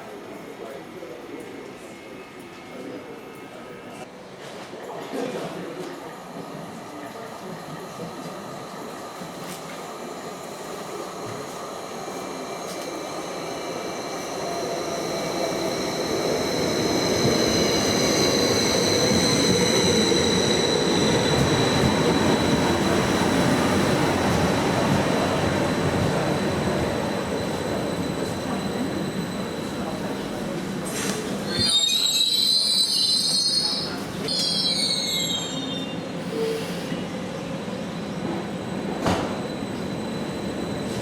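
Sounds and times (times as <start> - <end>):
train rumbling: 6.9 - 31.9.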